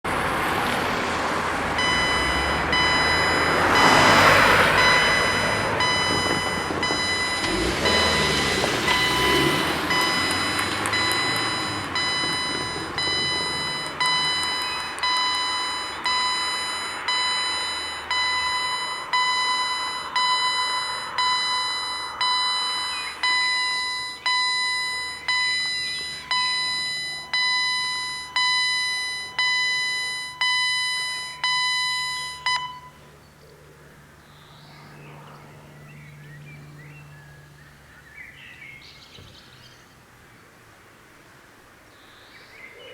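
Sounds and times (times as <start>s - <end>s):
vehicle passing: 0.1s - 33.1s, 33.8s - 37.9s
level crossing bell ringing: 1.8s - 33.0s.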